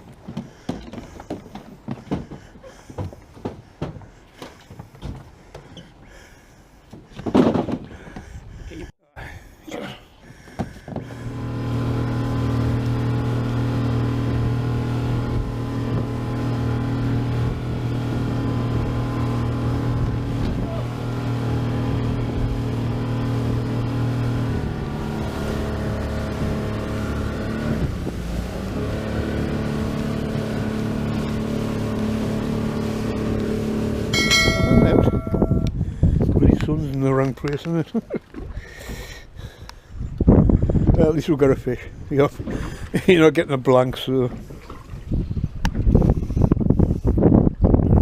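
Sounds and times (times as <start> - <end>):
boat engine running: 10.3 - 47.6.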